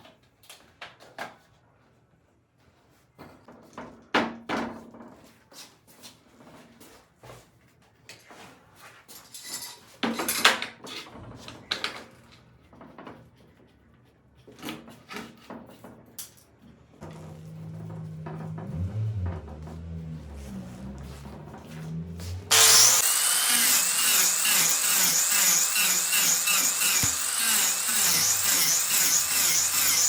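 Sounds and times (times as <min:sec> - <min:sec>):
wood and tools clattering: 0:22.5 - 0:30.0.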